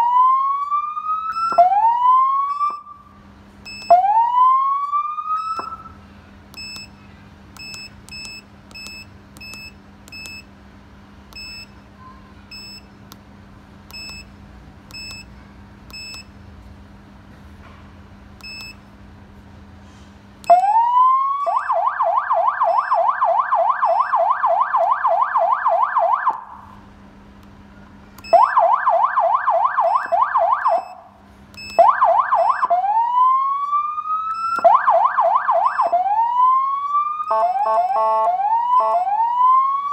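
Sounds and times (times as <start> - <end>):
electronic siren wail and yelp: 0.0 - 3.1, 3.9 - 6.0, 20.5 - 26.6, 28.3 - 31.0, 31.7 - 39.9
short high beeps: 37.3 - 39.1.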